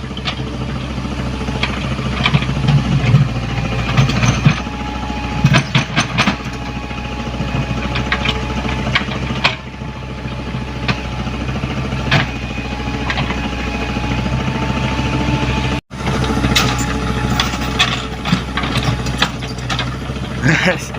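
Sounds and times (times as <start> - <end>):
excavator diesel engine running: 0.0 - 20.9
metallic clanks and knocks: 1.5 - 6.7, 7.4 - 9.7, 12.1 - 12.4, 16.4 - 20.4.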